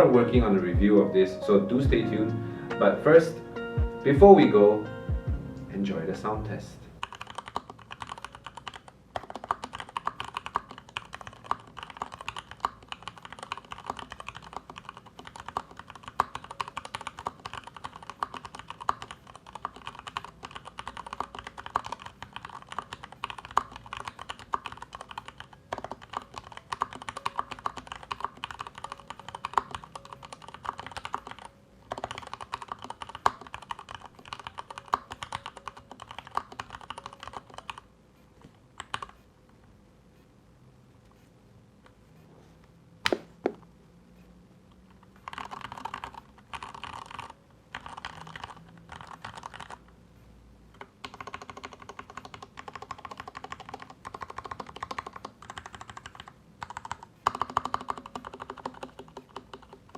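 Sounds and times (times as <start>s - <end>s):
mechanical keyboard typing: 7.0s - 37.9s, 38.7s - 39.2s, 45.0s - 49.9s, 50.8s - 59.9s.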